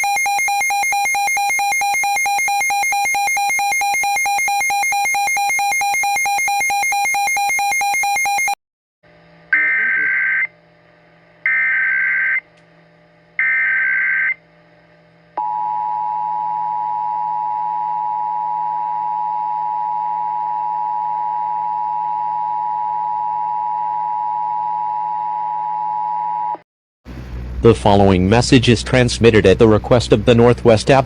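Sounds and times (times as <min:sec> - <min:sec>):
warbling data tone bursts: 0:09.6 - 0:10.5.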